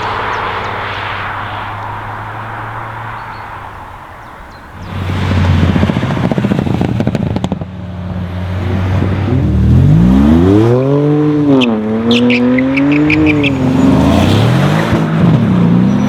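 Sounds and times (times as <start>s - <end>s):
car engine revving: 0.0s - 4.1s, 4.8s - 16.0s
crackling popping exhaust: 4.8s - 7.8s.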